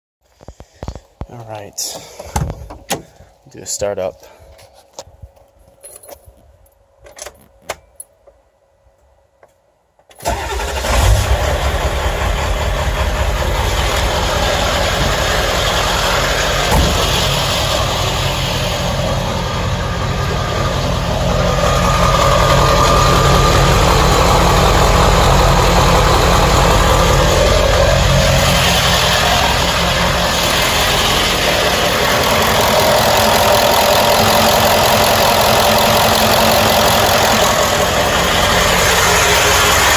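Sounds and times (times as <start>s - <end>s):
diesel engine starting and idling: 10.2s - 39.9s.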